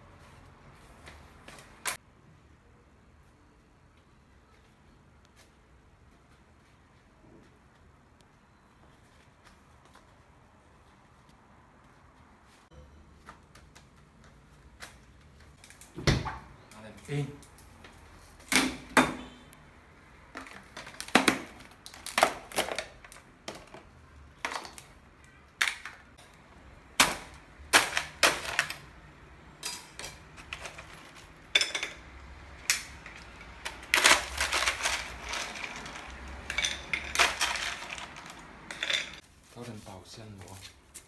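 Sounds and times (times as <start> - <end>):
ice cubes clinking: 29.6 - 32.2, 32.9 - 39.2.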